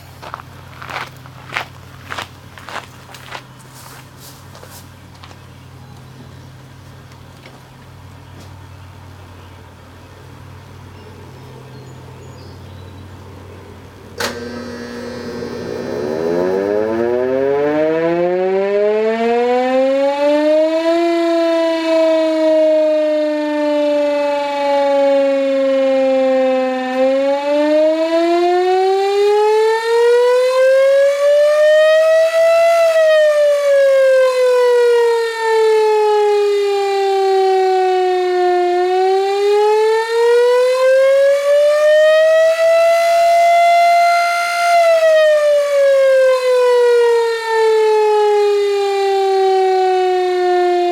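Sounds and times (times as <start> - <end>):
electric siren wailing: 14.2 - 50.9.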